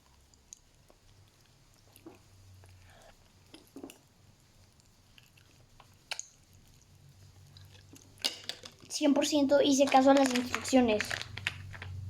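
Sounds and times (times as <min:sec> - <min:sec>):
chewing candy: 0:00.0 - 0:08.9, 0:09.8 - 0:12.0
candy crackling in mouth: 0:09.7 - 0:12.0.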